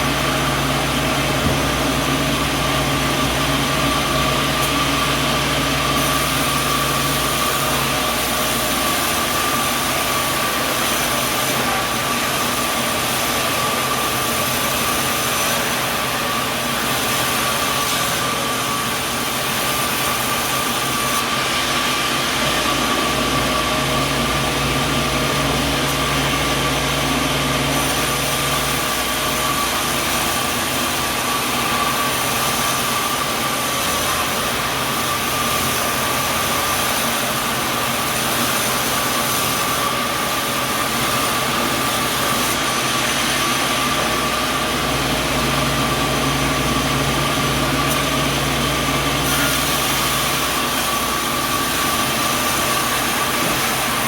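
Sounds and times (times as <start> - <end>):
machinery low hum: 0.0 - 17.4
machinery high whine: 0.0 - 54.0.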